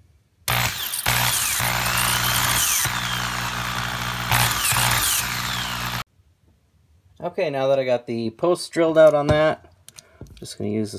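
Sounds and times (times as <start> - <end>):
drill bit squealing on metal: 0.5 - 6.0
power drill drilling metal: 0.5 - 6.1.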